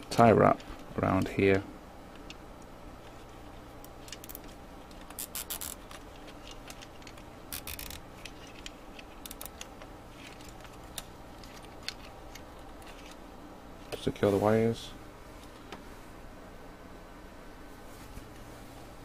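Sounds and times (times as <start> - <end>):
cable tie ratcheting clicks: 3.8 - 13.2
plastic handling clicks: 3.8 - 13.2.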